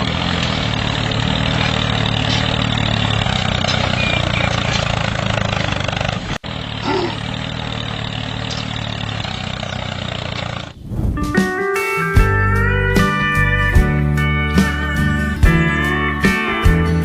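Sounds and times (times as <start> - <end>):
engine idling: 0.0 - 10.8.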